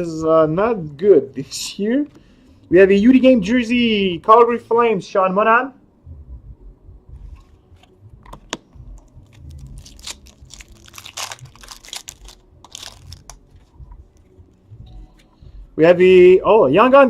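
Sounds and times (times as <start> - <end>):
cards being handled: 7.8 - 15.4
foil wrapper tearing and crinkling: 9.4 - 13.4.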